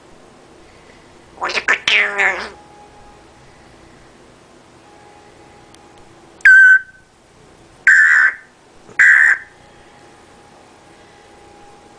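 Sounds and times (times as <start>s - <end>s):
parrot whistle and squawks: 1.4s - 2.6s, 6.5s - 7.0s, 7.9s - 9.5s.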